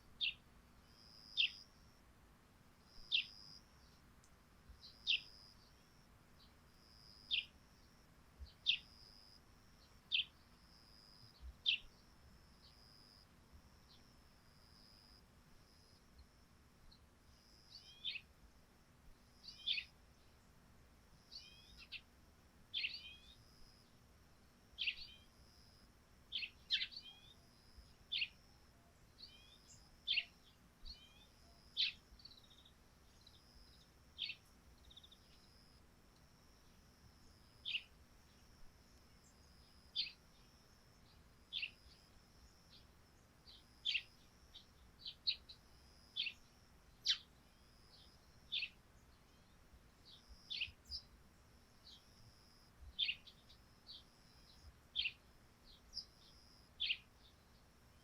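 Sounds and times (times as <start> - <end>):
faint high-pitched hum: 0.0 - 58.0
sparrows chirping: 0.2 - 0.4, 1.0 - 1.7, 3.0 - 4.0, 4.8 - 6.6, 7.2 - 7.6, 8.4 - 13.0, 17.7 - 18.3, 19.4 - 20.0, 21.3 - 22.1, 22.7 - 23.4, 24.8 - 25.4, 26.3 - 28.4, 29.0 - 35.6, 37.4 - 38.5, 39.1 - 52.2, 52.9 - 58.0.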